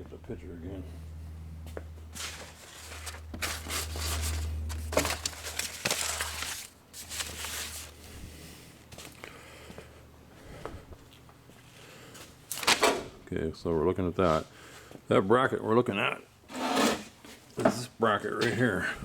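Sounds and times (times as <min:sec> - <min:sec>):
low hum: 0:00.0 - 0:06.9
handling rustles: 0:02.1 - 0:08.2.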